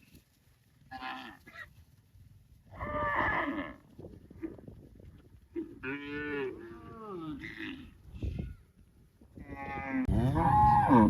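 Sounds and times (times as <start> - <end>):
cow mooing: 9.4 - 11.0.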